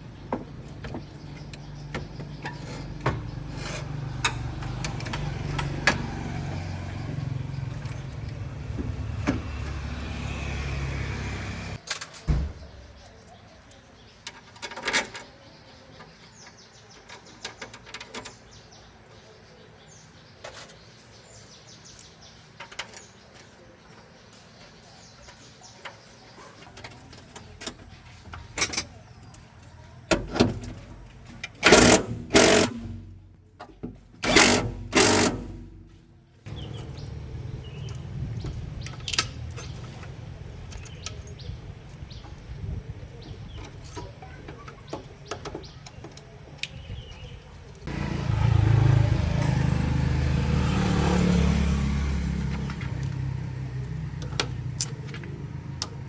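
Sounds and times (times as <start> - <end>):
car engine starting and idling: 34.2 - 41.0.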